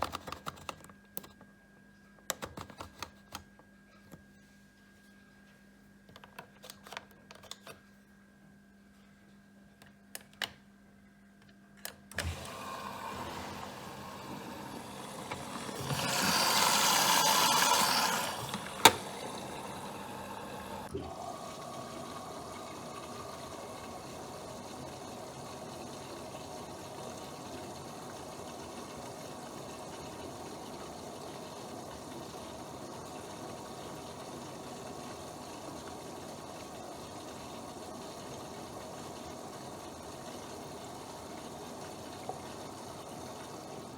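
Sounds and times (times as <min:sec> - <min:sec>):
washing machine clicks: 0:11.9 - 0:20.9
water rushing into washing machine: 0:12.1 - 0:43.9.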